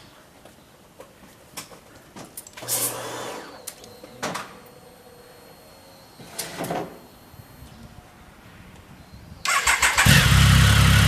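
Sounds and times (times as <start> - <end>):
faint steady whine: 0.0 - 9.5
starter turning engine over: 9.5 - 11.0.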